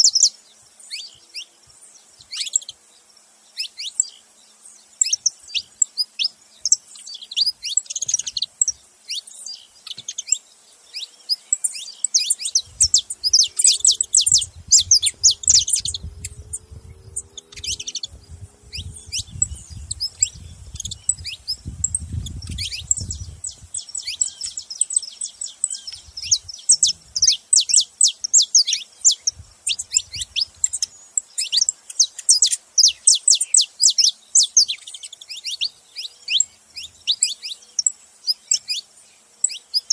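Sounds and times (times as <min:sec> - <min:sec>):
finch chirping: 0:00.0 - 0:01.5, 0:04.9 - 0:39.9
low rumble: 0:13.8 - 0:23.6.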